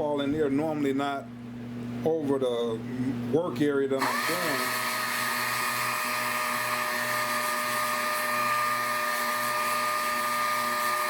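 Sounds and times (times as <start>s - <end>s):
vacuum cleaner motor whine: 4.0s - 11.0s.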